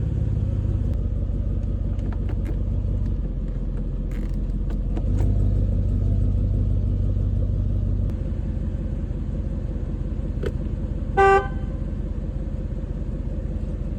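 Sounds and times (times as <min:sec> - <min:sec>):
car engine idling: 0:00.0 - 0:13.9
car horn blast: 0:11.2 - 0:11.9.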